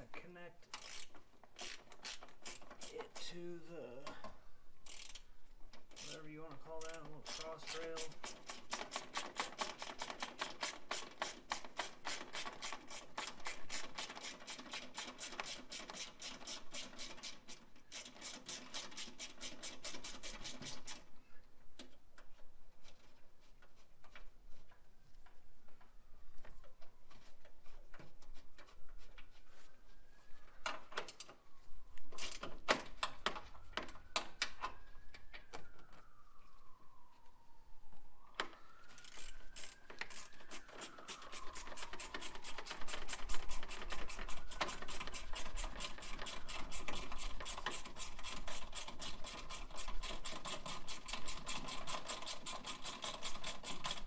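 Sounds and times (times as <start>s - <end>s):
ratchet wrench clicking: 0.7s - 3.0s, 4.8s - 5.3s, 6.0s - 6.2s, 6.8s - 17.2s, 42.1s - 54.0s.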